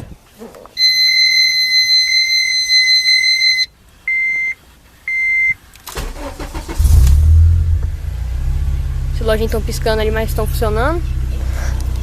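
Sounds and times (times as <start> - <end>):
car warning buzzer beeps: 0.8 - 5.6
starter cranking: 5.9 - 8.0
car engine deep rumble: 6.4 - 12.0.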